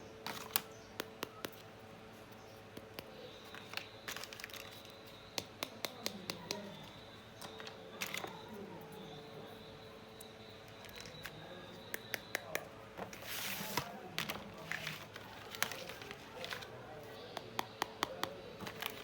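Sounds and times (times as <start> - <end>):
packaging rustling: 3.5 - 5.2, 13.0 - 16.8, 18.6 - 19.0.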